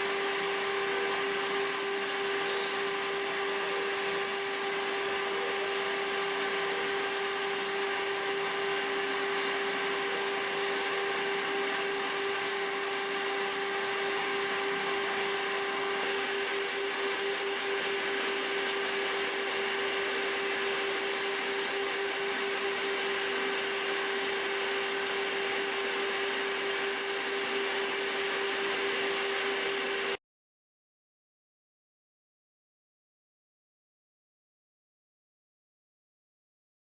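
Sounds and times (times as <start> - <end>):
router whining: 0.0 - 30.2.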